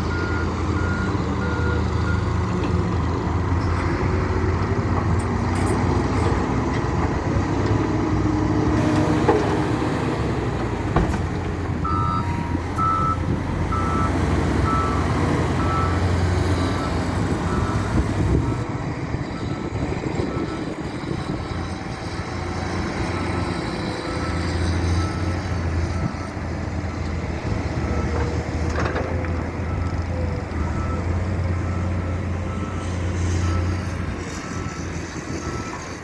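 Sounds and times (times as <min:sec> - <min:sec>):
heavy diesel machinery running: 0:00.0 - 0:36.0
reversing alarm beeping: 0:00.1 - 0:02.4, 0:11.8 - 0:18.6.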